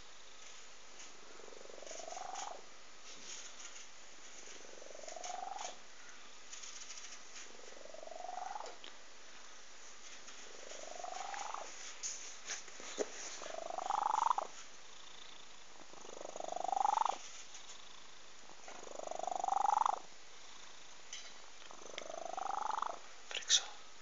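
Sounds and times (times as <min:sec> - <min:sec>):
cat snoring with whistling tone: 0:13.6 - 0:15.4, 0:16.0 - 0:17.2, 0:18.9 - 0:20.0, 0:22.0 - 0:23.0.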